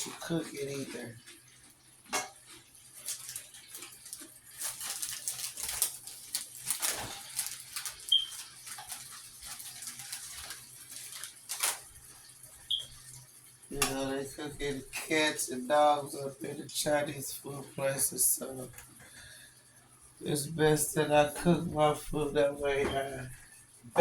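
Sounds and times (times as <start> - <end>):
food sizzling in a frying pan: 0.0 - 20.3
low steady hum: 12.7 - 24.0.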